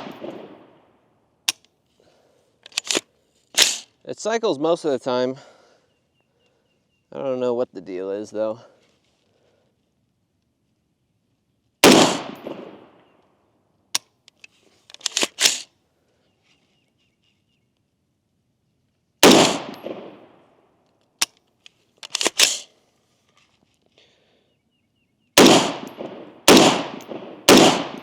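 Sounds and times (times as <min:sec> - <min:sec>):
rifle shots: 0:00.0 - 0:00.8, 0:11.8 - 0:13.0, 0:19.2 - 0:20.4, 0:25.4 - 0:28.0.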